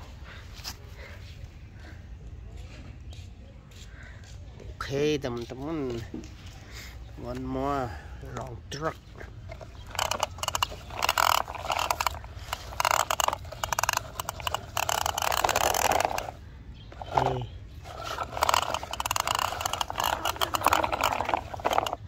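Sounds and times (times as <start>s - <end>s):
plastic toy truck clicking and rattling: 9.4s - 22.0s.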